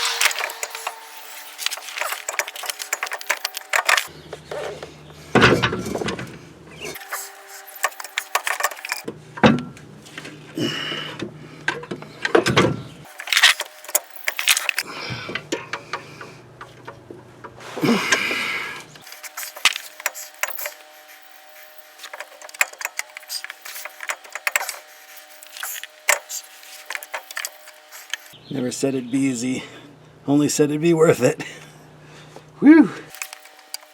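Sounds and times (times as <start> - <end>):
metallic clanks and scraping: 0.0 - 10.4.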